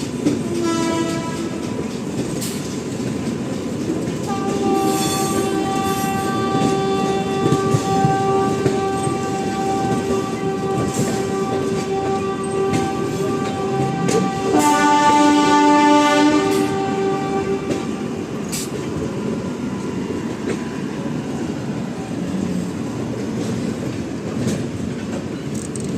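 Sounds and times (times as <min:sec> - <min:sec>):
train rumbling on rails: 0:00.0 - 0:25.9
train horns at different pitches: 0:00.2 - 0:01.8, 0:04.2 - 0:18.4.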